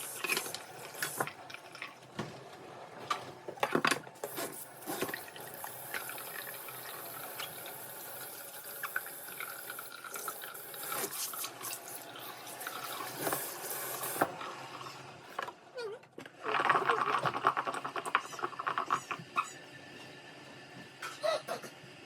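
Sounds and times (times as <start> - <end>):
tap running water into sink: 0.0 - 14.5.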